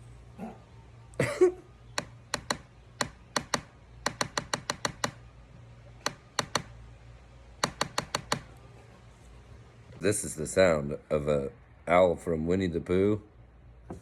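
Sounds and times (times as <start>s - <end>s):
pencil tapping on laptop: 2.0s - 5.2s, 6.0s - 6.7s, 7.6s - 8.4s.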